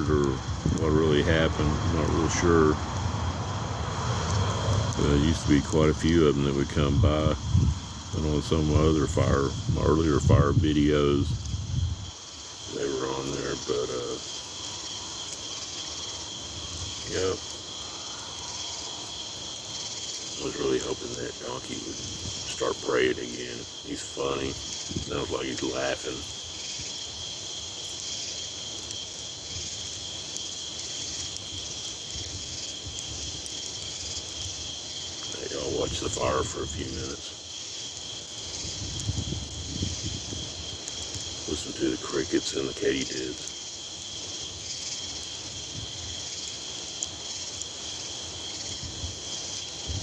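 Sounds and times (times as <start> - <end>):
low wind rumble: 0.0 - 15.3, 16.0 - 19.6, 20.3 - 26.4, 35.2 - 37.2, 38.5 - 42.0, 48.7 - 50.0
campfire crackling: 0.0 - 50.0
crickets and katydids trilling: 0.0 - 50.0.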